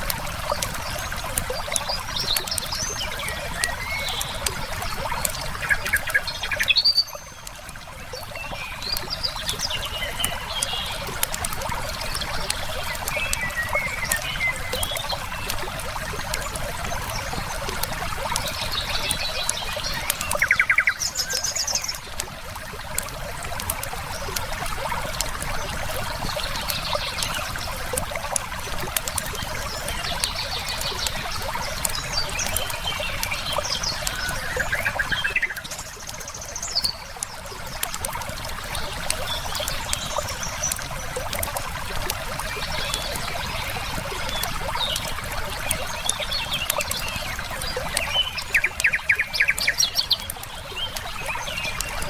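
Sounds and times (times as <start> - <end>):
wood fire crackling and popping: 0.0 - 6.6, 7.4 - 52.0
river flowing: 0.0 - 52.0
trilled birdcalls: 0.4 - 22.3, 29.3 - 37.9.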